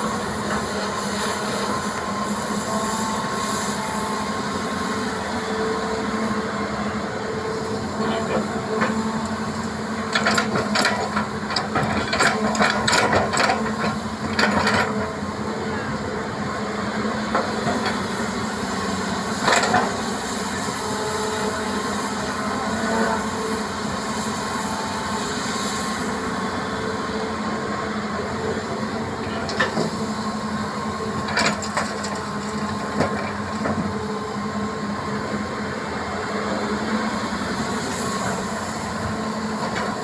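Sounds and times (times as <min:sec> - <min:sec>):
excavator diesel engine running: 0:00.0 - 0:40.0.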